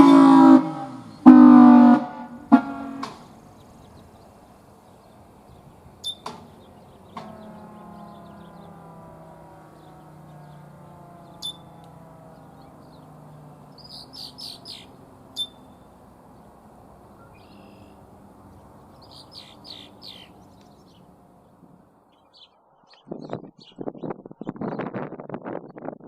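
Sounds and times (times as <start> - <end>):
songbirds chirping: 0.9 - 1.4, 2.4 - 24.8
siren winding down: 7.1 - 16.1.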